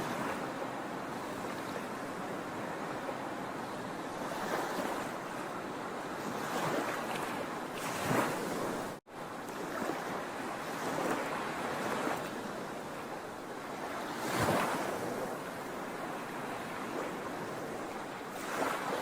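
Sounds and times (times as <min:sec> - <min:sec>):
sea waves breaking ashore: 0:00.0 - 0:19.0.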